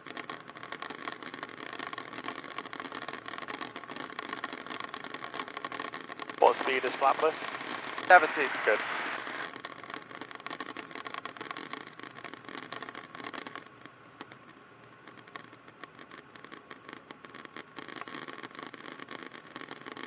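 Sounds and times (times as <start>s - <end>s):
faint steady tone: 6.4s - 9.4s
radio hiss and crackle: 6.4s - 9.5s
small radio clicks: 6.4s - 9.5s.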